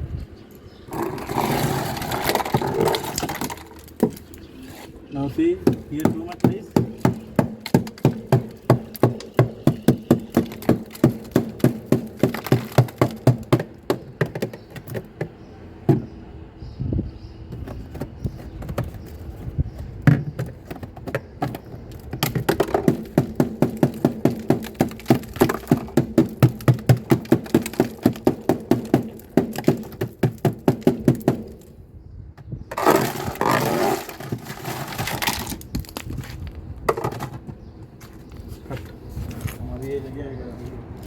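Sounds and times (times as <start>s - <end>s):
tool chipping ice: 5.6s - 15.0s, 21.4s - 31.7s, 32.7s - 36.1s.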